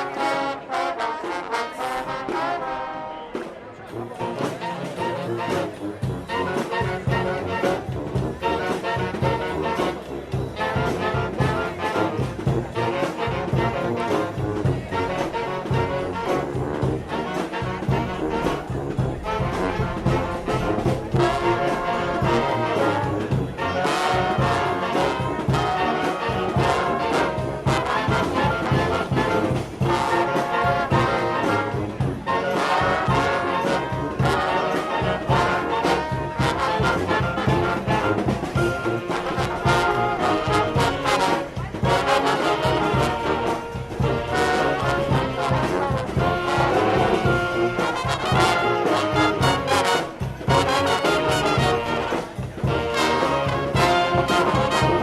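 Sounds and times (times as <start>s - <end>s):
brass band music: 0.0s - 55.0s
steady beat: 3.4s - 55.0s.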